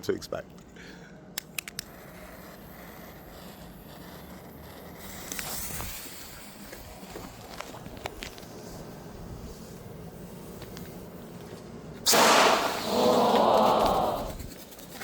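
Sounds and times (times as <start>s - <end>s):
outdoor background noise: 0.0s - 15.0s
short hiss: 12.1s - 13.0s.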